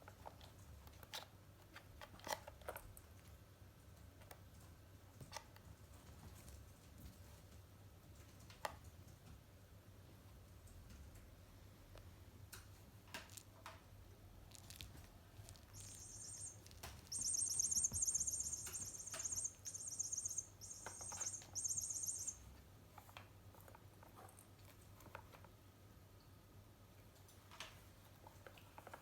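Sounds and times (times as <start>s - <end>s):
electronic toy chirping trills: 15.7s - 22.5s.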